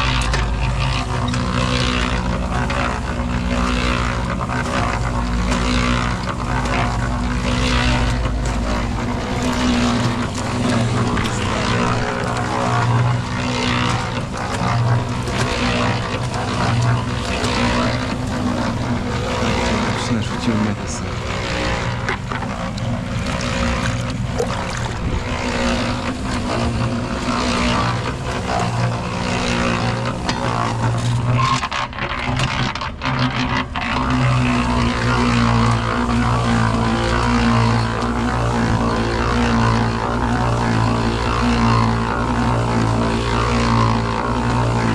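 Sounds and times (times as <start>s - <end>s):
engine running: 0.0s - 32.7s, 33.6s - 44.9s
mechanical noise: 7.5s - 23.6s.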